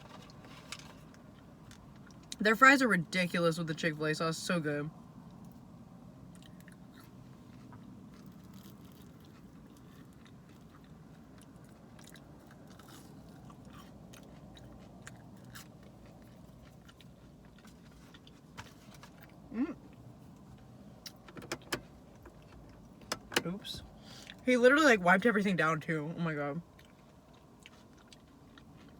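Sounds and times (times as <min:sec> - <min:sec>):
person chewing fries: 0:06.3 - 0:21.3, 0:26.6 - 0:28.9
person humming mm: 0:19.5 - 0:19.8.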